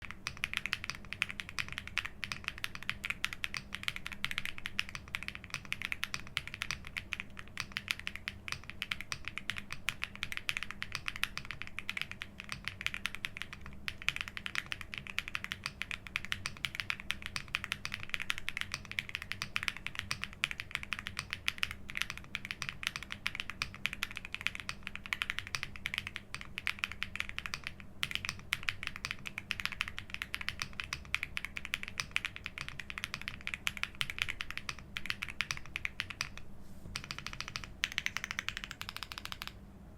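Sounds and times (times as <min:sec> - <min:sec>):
mechanical keyboard key clacks: 0:37.0 - 0:39.6.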